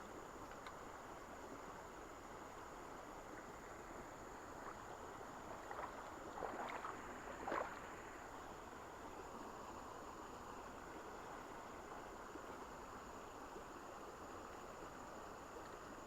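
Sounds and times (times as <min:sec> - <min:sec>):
river water running: 0:00.0 - 0:16.0
water splashing: 0:04.6 - 0:08.2.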